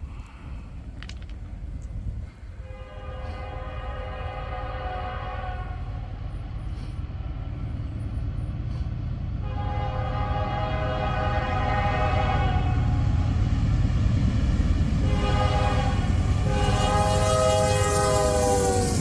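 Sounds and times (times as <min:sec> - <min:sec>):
locomotive horn blasts: 0:02.6 - 0:06.1, 0:09.4 - 0:13.0, 0:15.0 - 0:19.0.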